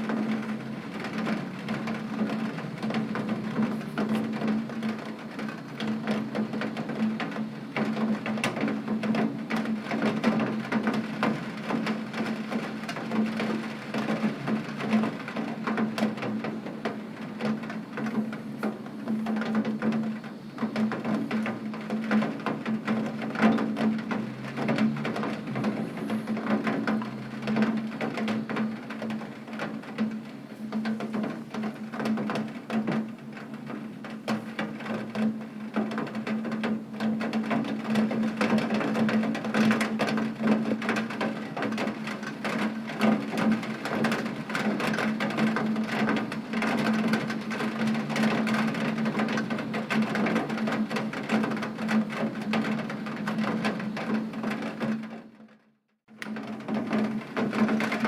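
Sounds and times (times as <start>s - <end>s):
heavy rain on a window: 0.0s - 58.0s.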